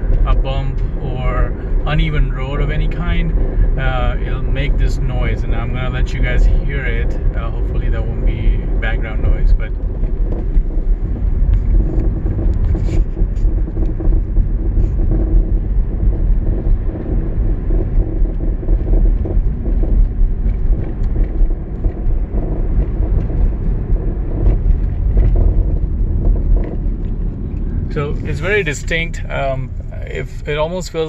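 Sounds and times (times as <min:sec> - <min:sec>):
car rumbling over bumpy road: 0:00.0 - 0:31.0
car knocking over bumps: 0:08.7 - 0:29.8.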